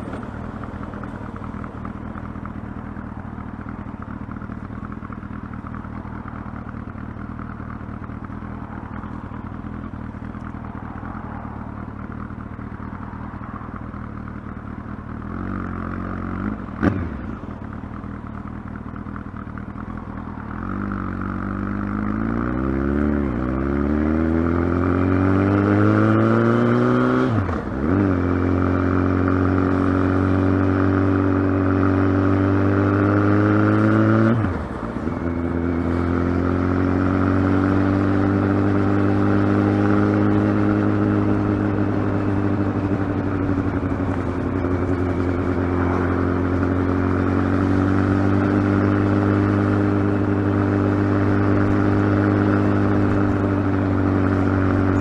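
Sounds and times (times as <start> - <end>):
motorcycle engine idling and revving: 0.0 - 55.0.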